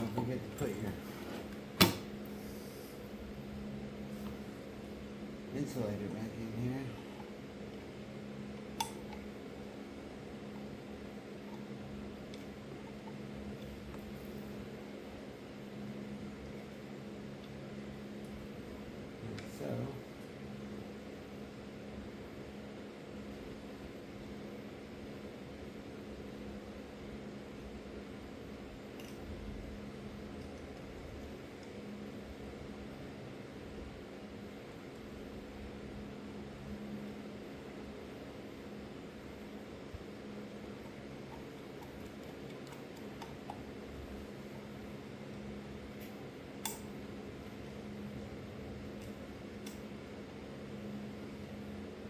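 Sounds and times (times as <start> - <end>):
mechanical hum: 0.0 - 52.0.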